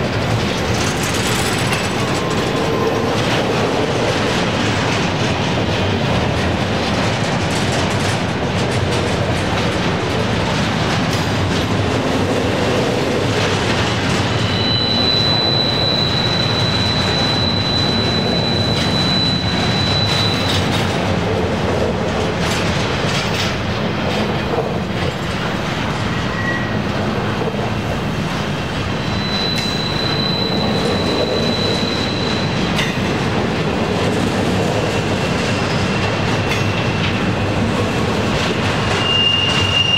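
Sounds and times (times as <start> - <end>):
freight train rumbling and clattering: 0.0 - 39.9
high-pitched wheel squeal: 14.2 - 20.8, 26.1 - 26.8, 28.9 - 32.7, 38.8 - 39.9.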